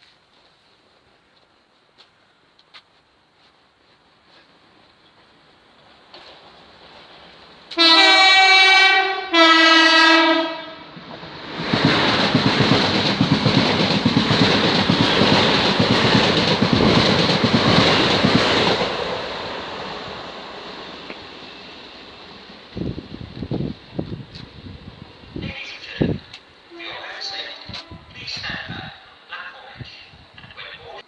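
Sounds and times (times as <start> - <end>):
train wheels on rails: 0.0 - 8.2, 10.9 - 28.8
two-tone train horn: 7.7 - 10.9.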